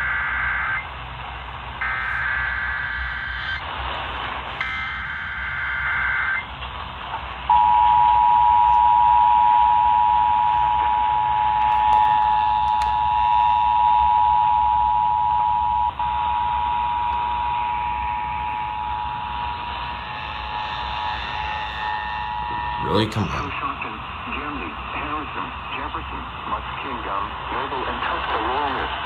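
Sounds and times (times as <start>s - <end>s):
radio hiss: 18.2s - 29.0s.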